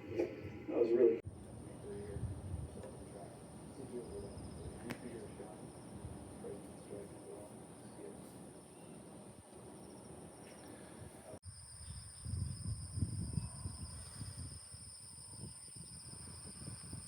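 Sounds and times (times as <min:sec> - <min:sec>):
low rumble on microphone: 0:01.3 - 0:08.4
crickets trilling: 0:02.8 - 0:10.8, 0:11.4 - 0:17.0.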